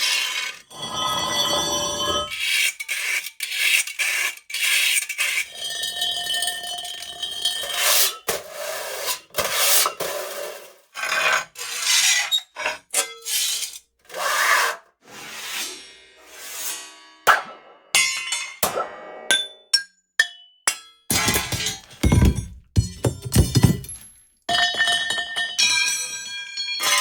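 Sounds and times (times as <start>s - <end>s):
metal scraping against metal: 0.0s - 3.2s.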